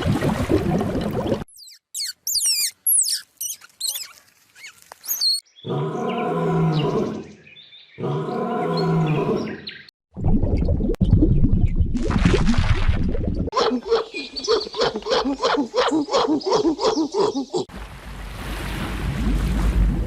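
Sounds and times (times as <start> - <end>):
bird chirping: 1.5 - 8.1, 13.9 - 14.9.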